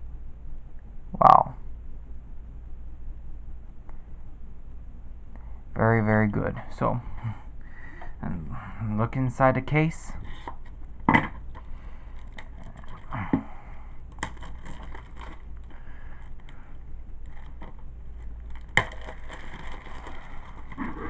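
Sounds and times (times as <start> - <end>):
plastic scraping and rattling: 10.2 - 13.4, 14.1 - 16.6, 17.2 - 21.0.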